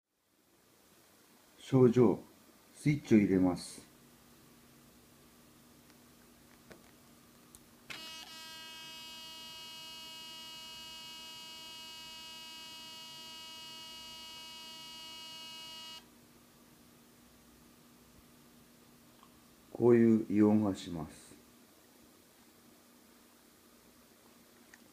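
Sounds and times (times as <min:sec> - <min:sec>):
camera high-pitched whine: 0:07.9 - 0:16.1.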